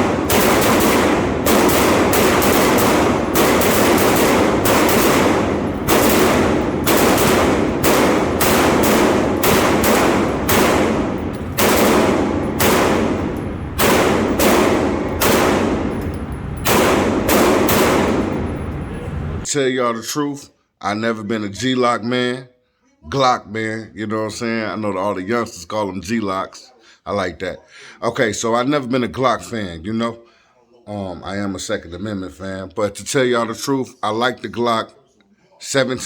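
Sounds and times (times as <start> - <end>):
pistol shots echoing: 0.0 - 19.4.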